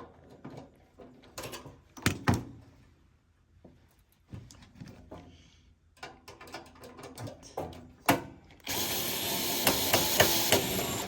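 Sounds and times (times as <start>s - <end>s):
power screwdriver running: 8.7s - 11.0s.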